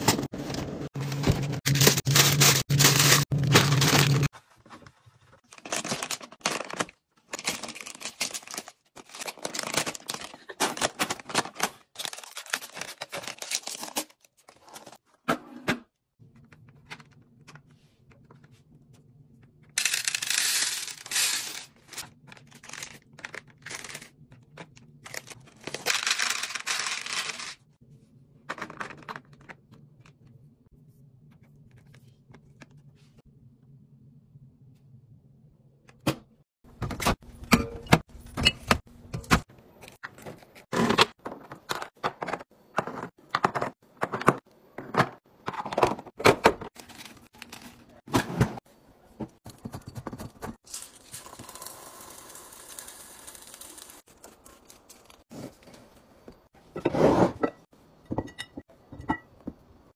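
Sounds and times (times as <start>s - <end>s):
plastic packaging crinkling: 5.4s - 14.8s.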